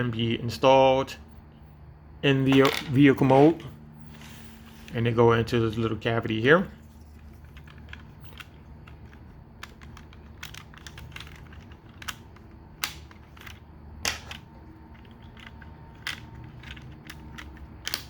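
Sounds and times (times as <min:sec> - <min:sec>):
steady low hum: 0:00.0 - 0:18.0
plastic toy parts clicking: 0:07.4 - 0:18.0.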